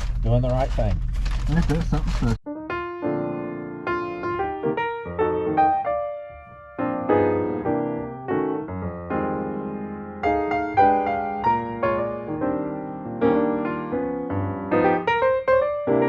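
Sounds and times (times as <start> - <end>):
piano music: 2.4 - 16.0.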